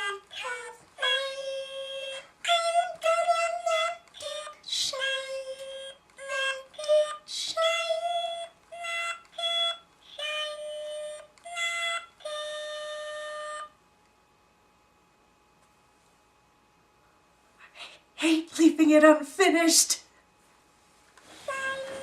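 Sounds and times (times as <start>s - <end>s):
toy singing in electronic voice: 0.0s - 13.8s, 21.5s - 22.0s.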